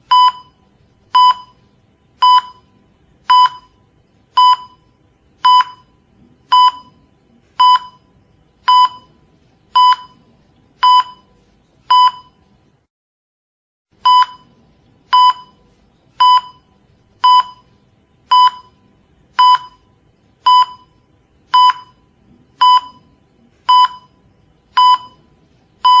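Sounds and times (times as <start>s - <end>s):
patient monitor beeping: 0.0s - 12.5s, 14.0s - 26.0s.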